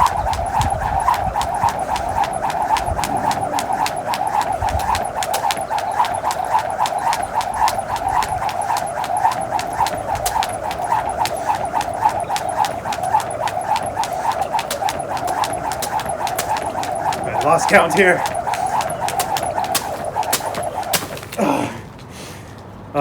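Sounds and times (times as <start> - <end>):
jump rope whirring: 0.0 - 22.1
rope tapping on ground: 0.0 - 22.1.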